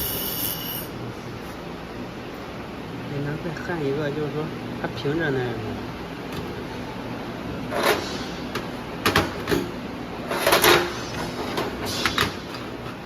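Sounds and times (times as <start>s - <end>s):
laser welding hissing bursts: 0.0s - 1.0s.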